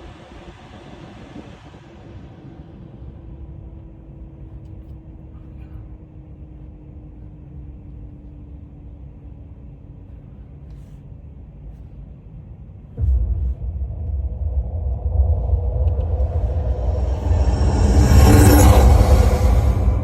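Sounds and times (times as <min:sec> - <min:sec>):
faint falling tone: 0:13.0 - 0:20.0.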